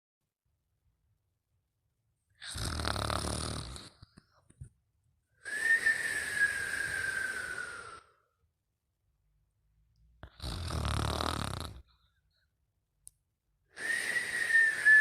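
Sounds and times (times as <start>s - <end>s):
person snoring: 2.4s - 4.1s, 10.2s - 11.9s
thin whistling breath: 5.4s - 8.4s, 13.7s - 15.0s.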